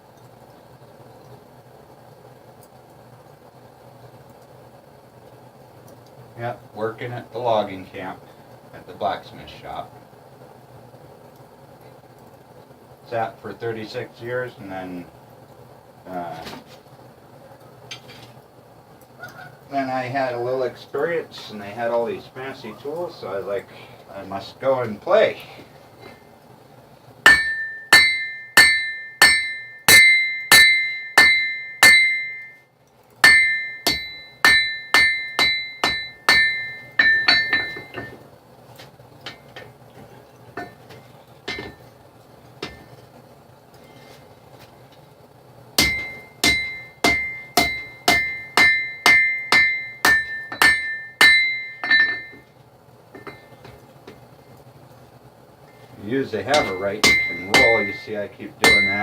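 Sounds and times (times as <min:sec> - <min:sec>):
hammer striking steel on anvil: 0:27.3 - 0:32.6, 0:33.2 - 0:38.2, 0:41.5 - 0:41.9, 0:42.6 - 0:43.0, 0:45.8 - 0:52.5, 0:53.2 - 0:53.6, 0:56.5 - 0:59.0.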